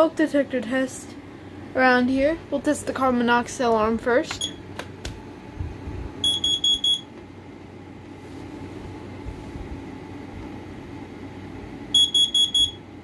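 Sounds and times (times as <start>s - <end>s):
carbon monoxide alarm beeps: 4.3s - 4.6s, 6.2s - 7.1s, 11.9s - 12.9s.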